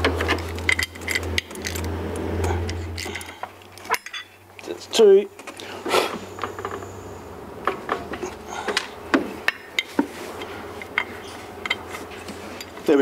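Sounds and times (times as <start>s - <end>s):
metal parts and tools clicking: 0.0s - 4.4s, 10.8s - 12.8s
faint steady hum: 0.0s - 13.0s.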